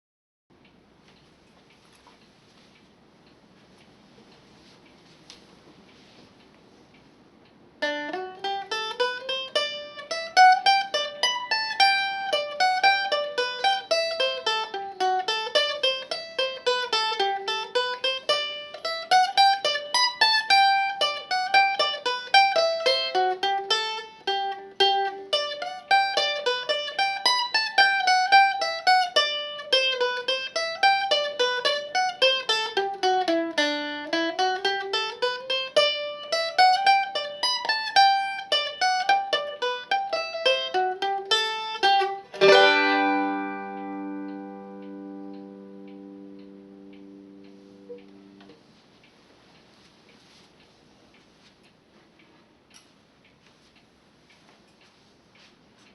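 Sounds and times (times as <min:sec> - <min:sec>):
faint room hiss: 0:00.5 - 0:55.9
mandolin melody: 0:07.8 - 0:48.8.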